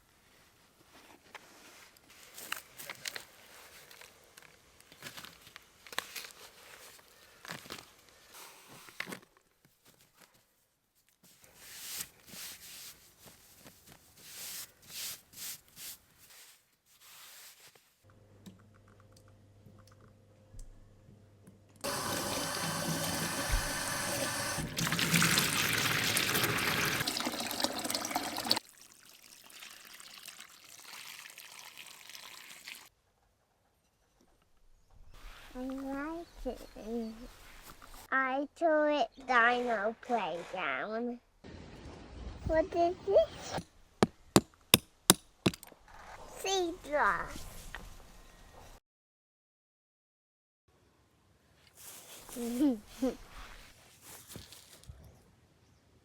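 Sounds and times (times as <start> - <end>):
tap water running into sink: 21.8 - 32.9.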